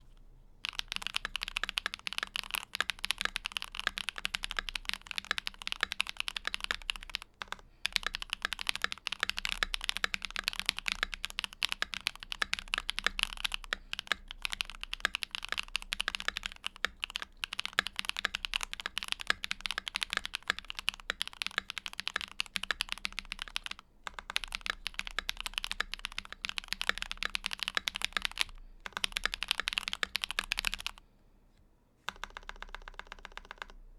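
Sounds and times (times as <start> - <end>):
fast mechanical keyboard typing: 0.6 - 31.0, 32.1 - 33.8.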